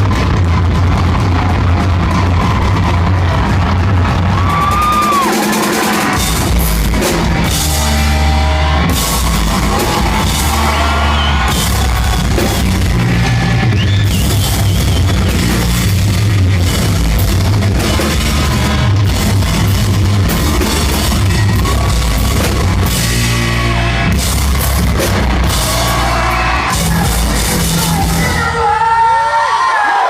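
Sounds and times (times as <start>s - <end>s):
live rock band playing: 0.0s - 29.0s.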